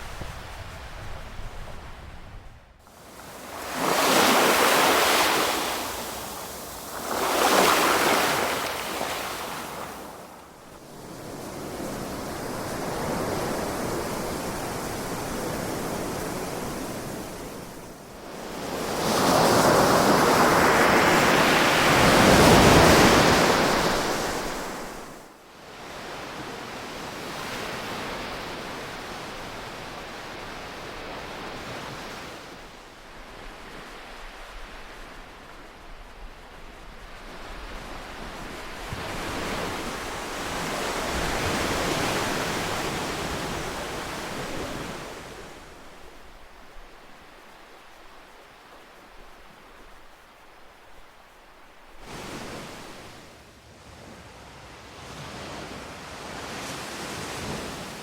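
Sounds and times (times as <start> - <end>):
ocean waves breaking: 2.9 - 17.1.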